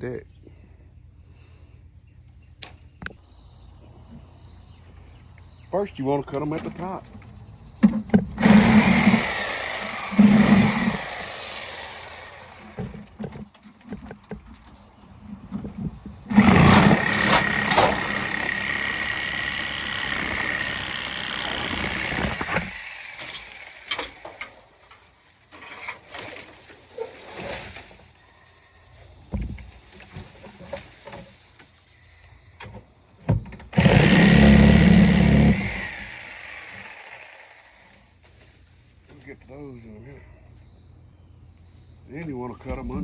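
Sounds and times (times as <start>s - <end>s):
power saw cutting wood: 8.2s - 13.2s, 16.3s - 24.5s, 33.7s - 38.0s.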